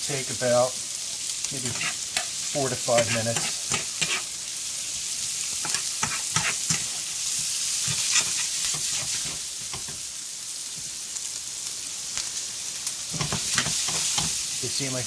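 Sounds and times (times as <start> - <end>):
onions sizzling in a frying pan: 0.0 - 15.0
utensil scraping a pan: 1.6 - 4.4, 5.6 - 7.1, 7.8 - 9.4.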